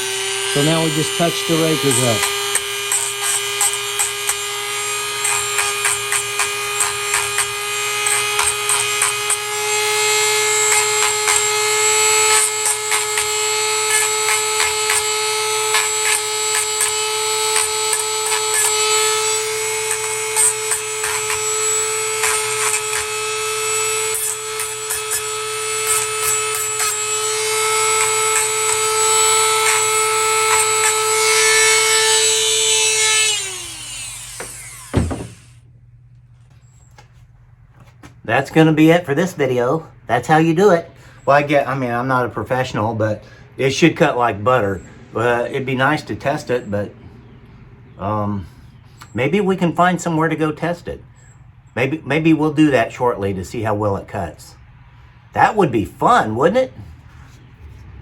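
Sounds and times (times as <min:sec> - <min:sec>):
rotary tool motor whine: 0:00.0 - 0:35.6.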